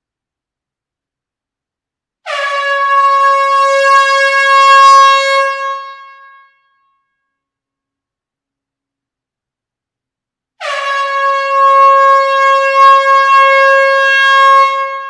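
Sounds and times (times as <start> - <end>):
air horn blast: 2.2 - 6.3, 10.6 - 15.0.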